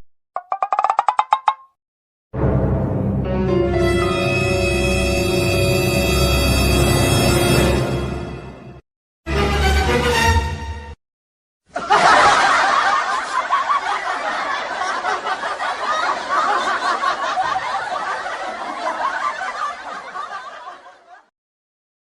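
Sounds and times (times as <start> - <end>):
crowd laughing: 11.7 - 21.3.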